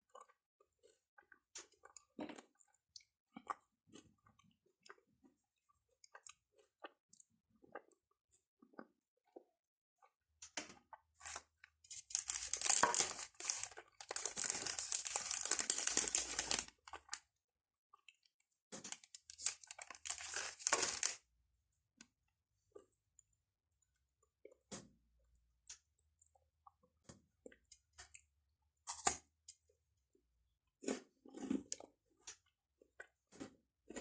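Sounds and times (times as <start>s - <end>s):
wrapper tearing and crinkling: 11.3s - 16.8s, 18.8s - 21.2s.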